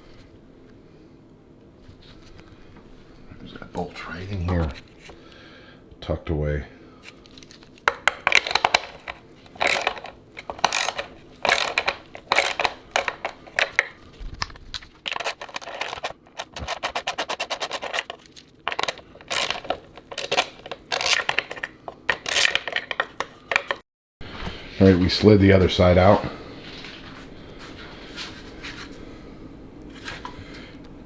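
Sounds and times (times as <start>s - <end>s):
ratchet clicks: 9.6s - 13.2s.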